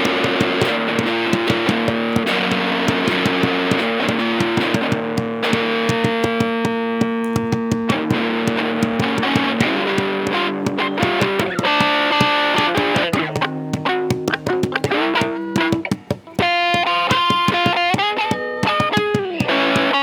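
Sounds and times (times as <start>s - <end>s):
guitar chords: 0.0s - 20.0s
hands banging on a table: 0.0s - 20.0s.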